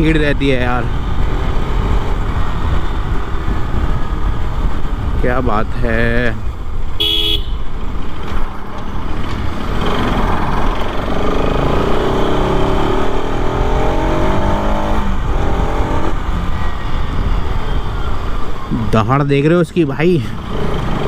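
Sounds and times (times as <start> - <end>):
motorcycle engine accelerating: 0.0 - 5.3, 7.0 - 18.4, 20.3 - 21.0.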